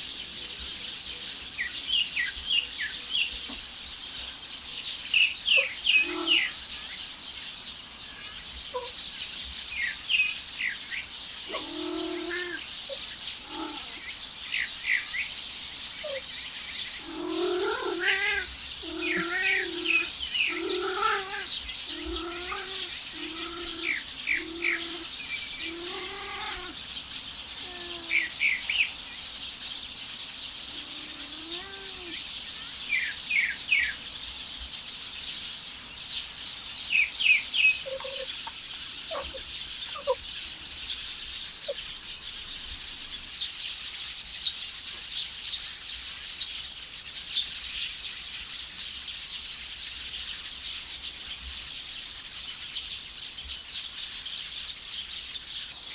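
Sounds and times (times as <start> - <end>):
birds chirping: 0.0 - 55.9
cat yowling: 5.6 - 6.5, 8.1 - 9.0, 11.5 - 14.0, 17.0 - 26.8, 27.6 - 28.3, 30.7 - 32.2, 37.8 - 38.3, 39.1 - 40.2.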